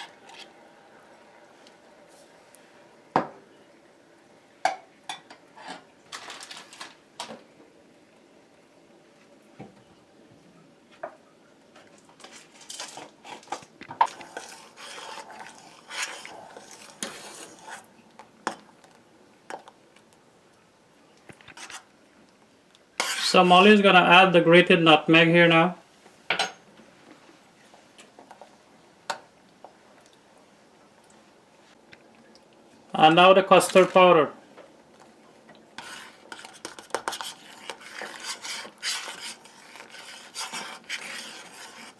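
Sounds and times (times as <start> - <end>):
utensil scraping metal pot: 12.3 - 19.7, 21.5 - 21.9, 23.0 - 23.8, 35.8 - 41.9.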